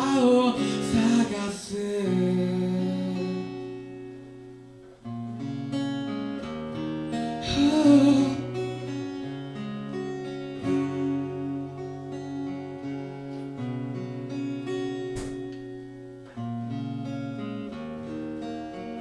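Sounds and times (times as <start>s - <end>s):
person singing: 0.0s - 3.7s, 7.4s - 9.0s
acoustic guitar chords: 0.0s - 19.0s.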